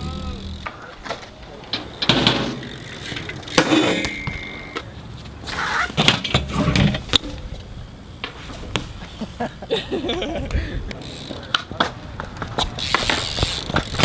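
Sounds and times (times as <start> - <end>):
bike landing knocks: 0.0 - 4.9
bike tyres rolling on pavement: 0.0 - 14.0.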